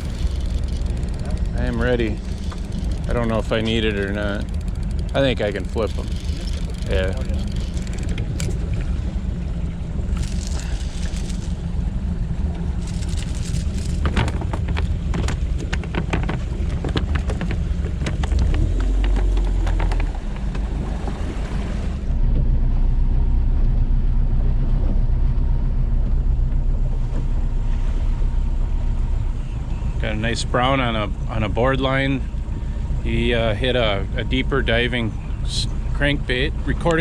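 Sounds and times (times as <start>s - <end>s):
wind noise on microphone: 0.0s - 5.0s
sharp knocks and clatter: 0.0s - 8.6s, 12.8s - 20.7s
boat engine rumble: 0.0s - 37.0s.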